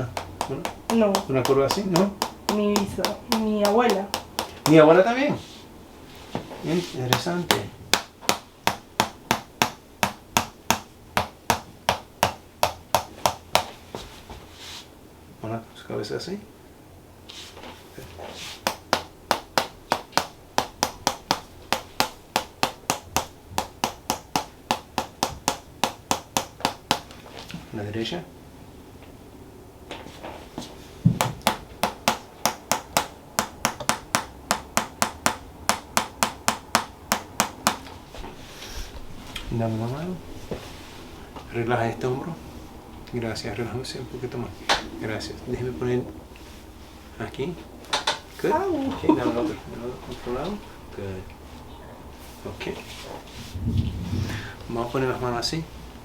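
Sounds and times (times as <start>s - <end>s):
sharp evenly spaced taps: 0.0s - 5.0s, 7.1s - 13.8s, 18.6s - 27.3s, 31.1s - 38.0s.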